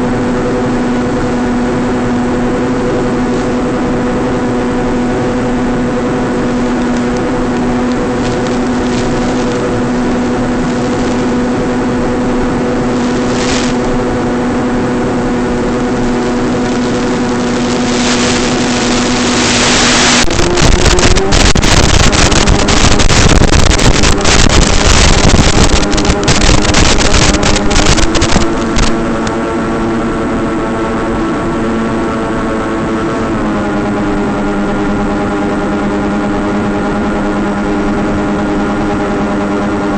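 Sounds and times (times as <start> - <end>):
electric motor and propeller droning: 0.0 - 39.9
static hiss with crackling: 3.0 - 3.8, 6.2 - 29.4.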